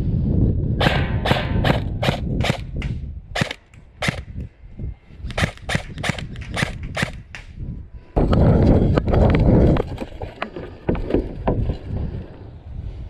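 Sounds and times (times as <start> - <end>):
airsoft rifle single shots: 0.8 - 4.3.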